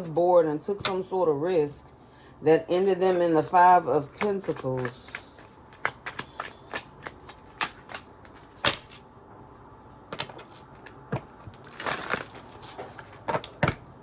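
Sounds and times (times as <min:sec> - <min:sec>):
cards snapping and tapping: 0:04.2 - 0:09.0.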